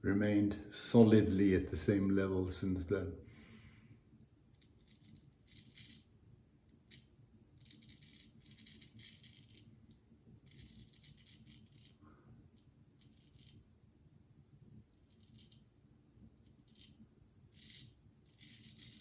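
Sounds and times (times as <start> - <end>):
razor scraping stubble: 6.9 - 9.7, 10.4 - 12.0, 16.5 - 19.0.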